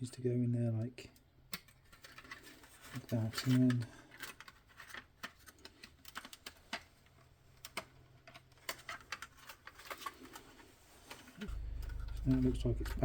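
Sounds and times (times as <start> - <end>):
faint low hum: 11.0 - 13.0.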